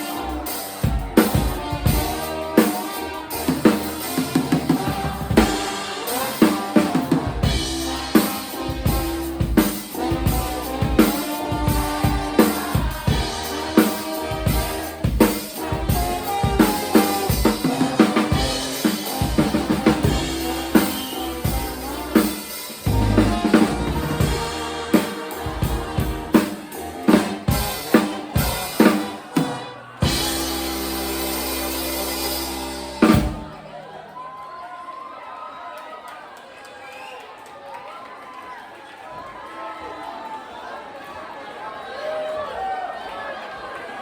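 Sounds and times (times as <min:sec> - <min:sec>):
live band music: 0:00.0 - 0:33.8
bass drum and snare hits: 0:22.9 - 0:26.5.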